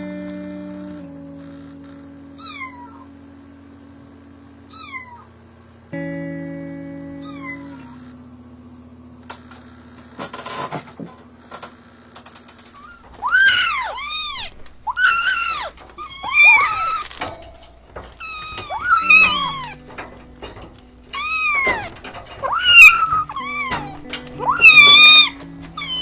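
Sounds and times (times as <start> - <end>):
background music with held chords: 0.0 - 4.7, 5.9 - 9.2
kitten mewing: 2.3 - 3.2, 4.7 - 5.3, 7.2 - 8.1, 12.8 - 17.1, 18.2 - 19.8, 21.1 - 26.0
clicks: 9.2 - 26.0.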